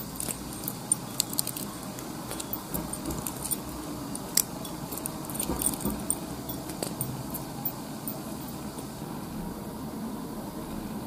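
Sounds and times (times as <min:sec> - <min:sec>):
small metallic clicks: 0:00.0 - 0:08.6.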